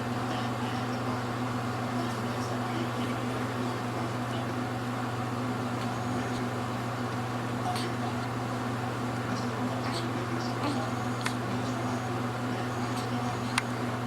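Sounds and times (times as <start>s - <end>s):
low mechanical motor hum: 0.0s - 14.0s.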